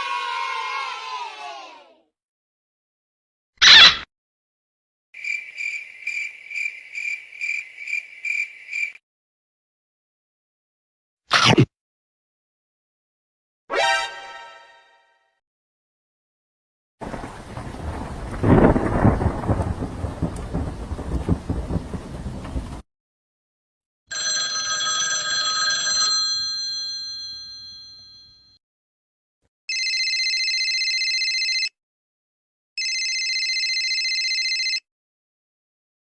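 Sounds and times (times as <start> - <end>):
rain: 17.0 - 22.8
thunderclap: 17.0 - 22.8
telephone bell ringing: 24.1 - 28.6, 29.7 - 31.7, 32.8 - 34.8.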